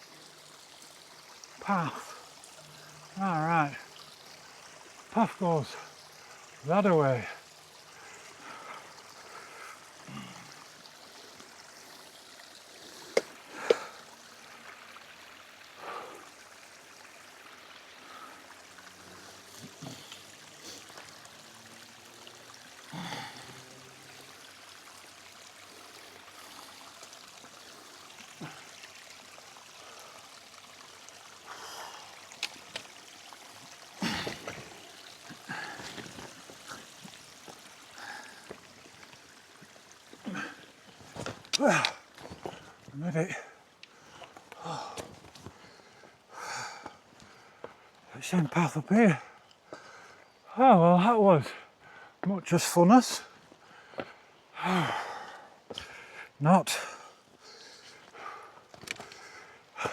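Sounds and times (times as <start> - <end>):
stream trickling: 0.0 - 59.9
person breathing hard: 22.9 - 23.6, 31.5 - 32.2, 43.9 - 47.9, 53.6 - 59.9.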